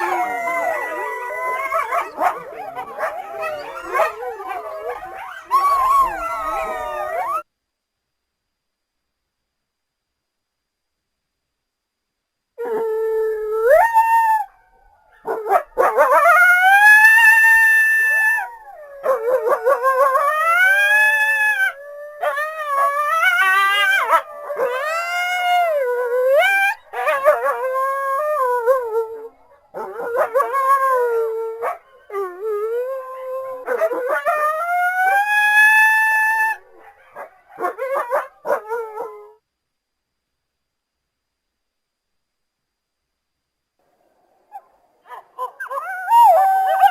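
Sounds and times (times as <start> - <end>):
coyote howling: 0.0 - 7.4, 16.0 - 28.9, 29.8 - 36.6.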